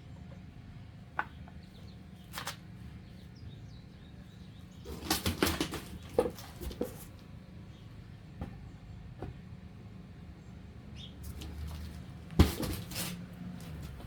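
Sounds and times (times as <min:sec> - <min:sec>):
handling rustling and clicking: 0:11.3 - 0:14.0.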